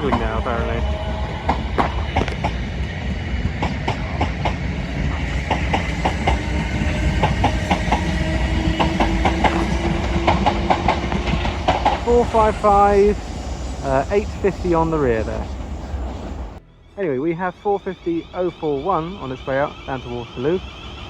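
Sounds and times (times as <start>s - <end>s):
train rumble: 0.0s - 16.6s, 17.4s - 21.0s
train wheels clicking over rail joints: 0.0s - 16.6s.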